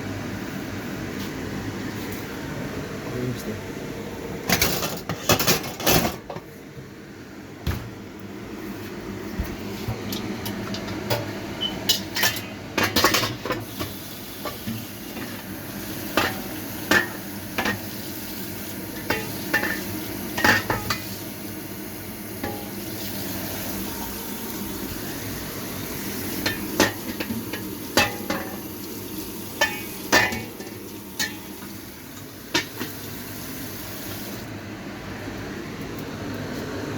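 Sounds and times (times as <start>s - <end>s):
utensils clinking against pots: 4.5s - 6.4s, 10.1s - 18.0s, 18.9s - 21.3s, 22.4s - 24.4s, 26.2s - 28.8s, 29.6s - 33.1s.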